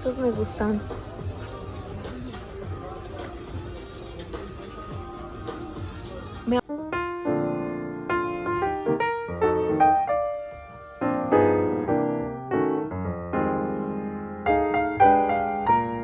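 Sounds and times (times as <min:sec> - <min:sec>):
gentle piano piece: 0:06.5 - 0:16.0.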